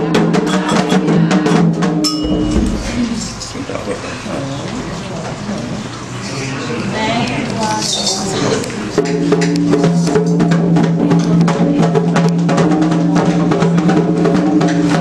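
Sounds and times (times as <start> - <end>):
fast drumming and percussion: 0.0 - 4.5, 8.9 - 15.0
steady held tone: 2.1 - 4.3.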